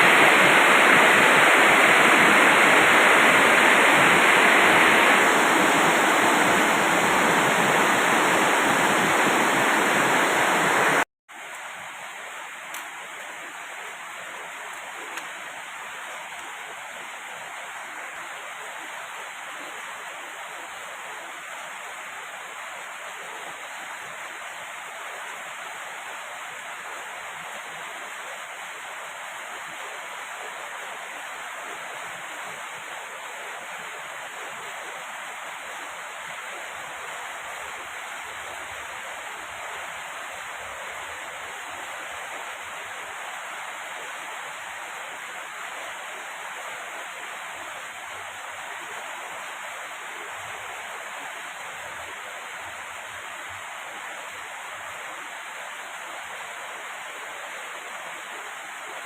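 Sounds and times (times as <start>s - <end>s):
heavy rain pouring: 0.0s - 20.8s.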